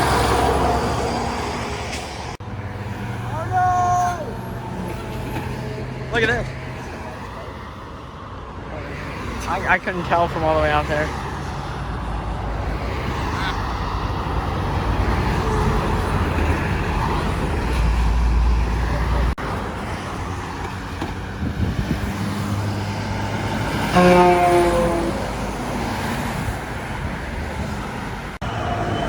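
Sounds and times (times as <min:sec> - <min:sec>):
heavy trucks rumbling past: 0:00.0 - 0:29.0
truck horn: 0:23.8 - 0:25.6.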